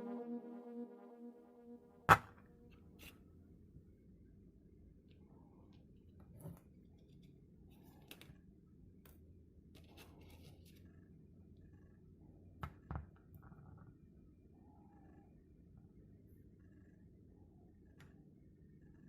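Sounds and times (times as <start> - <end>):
steady low hum: 0.0 - 2.2
faint clicks and scratches: 9.0 - 11.0.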